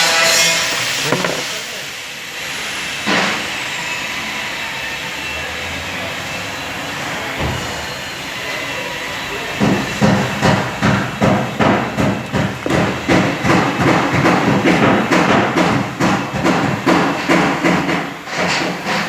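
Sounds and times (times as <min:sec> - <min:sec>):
sharp knocks: 0:00.5 - 0:01.6, 0:10.0 - 0:16.6.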